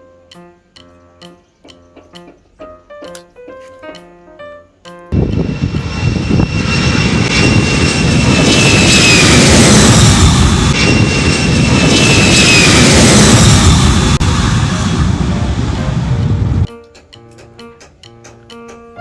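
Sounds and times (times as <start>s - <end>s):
high whine: 5.1s - 16.7s
jet engine rushing: 5.1s - 16.7s.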